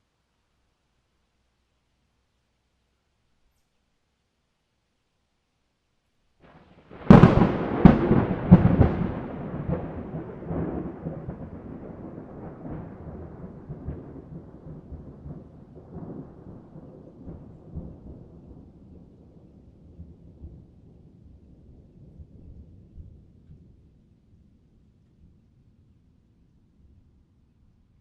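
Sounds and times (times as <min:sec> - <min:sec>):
thunder cracks: 0:06.5 - 0:19.2
thunder rumble: 0:06.5 - 0:24.5.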